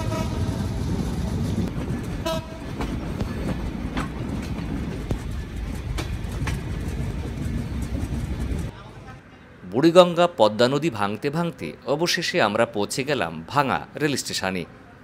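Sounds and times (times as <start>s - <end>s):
train horn notes: 0.0s - 0.8s, 2.2s - 2.8s
train rumbling on rails: 0.0s - 8.8s
wheels clicking over rail joints: 0.3s - 8.7s.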